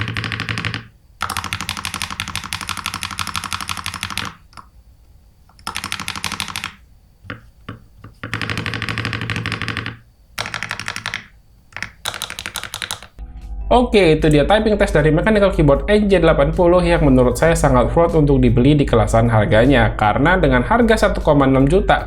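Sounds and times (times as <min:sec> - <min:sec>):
fast typing on mechanical keyboard: 0:00.0 - 0:04.6, 0:05.6 - 0:07.4, 0:08.2 - 0:13.2.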